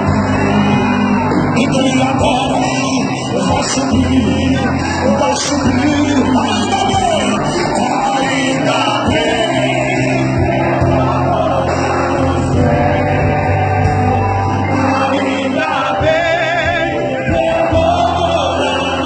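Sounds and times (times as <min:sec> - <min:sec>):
band playing gospel music: 0:00.0 - 0:19.0
voices singing: 0:00.0 - 0:19.0.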